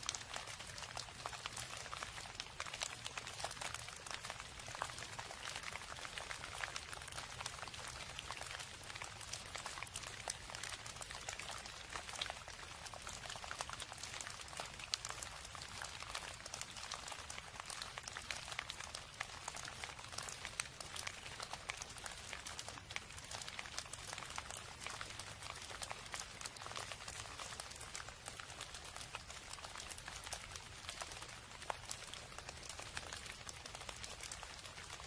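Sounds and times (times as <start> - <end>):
steady rain falling: 0.0 - 35.0.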